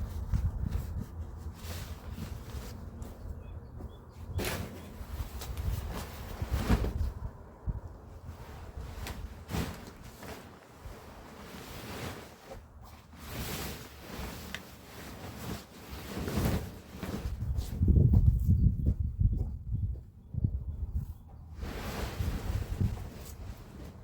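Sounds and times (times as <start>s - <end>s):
rustling: 0.0s - 3.3s, 4.4s - 7.4s, 8.2s - 17.8s, 21.6s - 24.0s.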